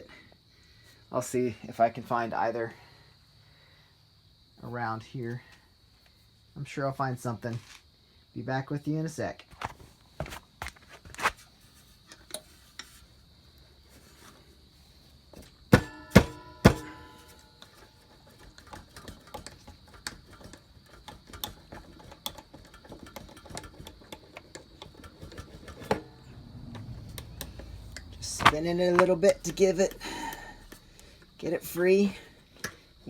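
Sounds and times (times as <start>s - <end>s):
sharp metal clanks: 15.7s - 17.6s
metal tools clicking and tapping: 15.8s - 26.0s, 27.1s - 29.6s.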